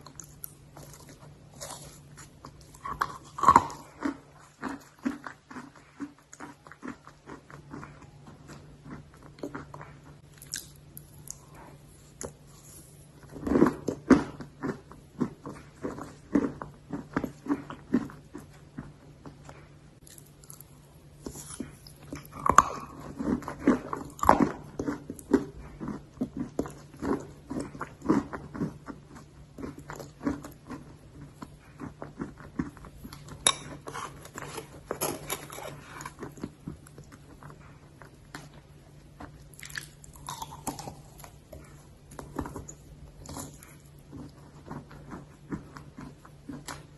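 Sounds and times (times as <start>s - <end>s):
low steady hum: 0.0s - 46.9s.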